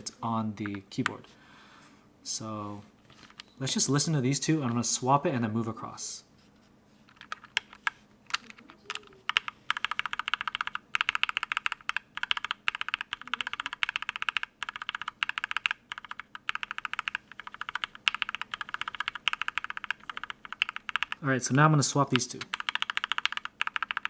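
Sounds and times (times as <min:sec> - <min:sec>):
mechanical keyboard keystrokes: 0:07.1 - 0:21.2, 0:22.1 - 0:24.0.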